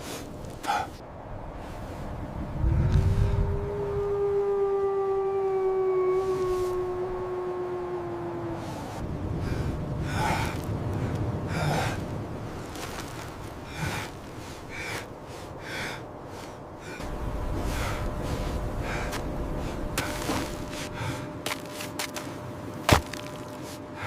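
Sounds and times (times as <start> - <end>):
person breathing heavily: 0.0 - 1.0, 8.8 - 12.2, 12.8 - 21.7
low steady rumble: 1.1 - 24.0.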